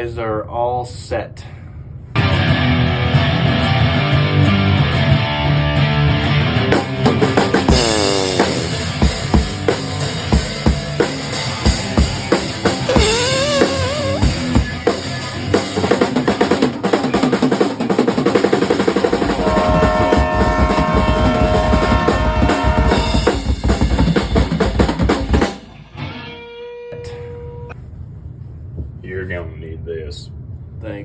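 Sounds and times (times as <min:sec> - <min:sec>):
guitar note bending: 0:06.3 - 0:15.2, 0:25.7 - 0:27.7
drum kit playing: 0:06.7 - 0:26.0.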